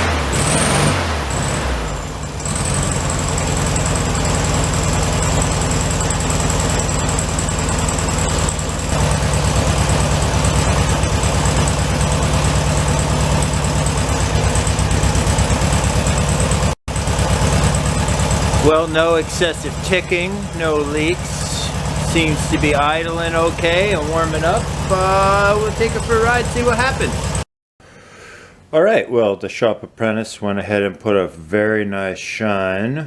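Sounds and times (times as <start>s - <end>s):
car engine idling: 0.0s - 27.5s.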